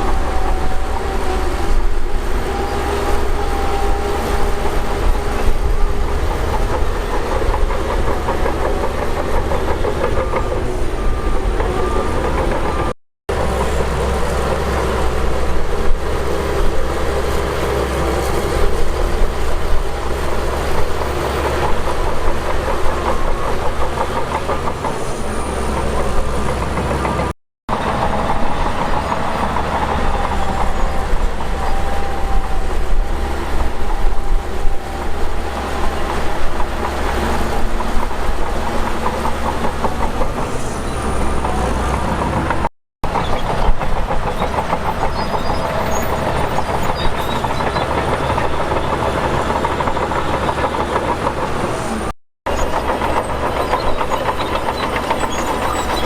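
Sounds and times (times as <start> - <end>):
heavy diesel machinery running: 0.0 - 56.0
continuous rattle: 35.8 - 51.8, 52.5 - 56.0.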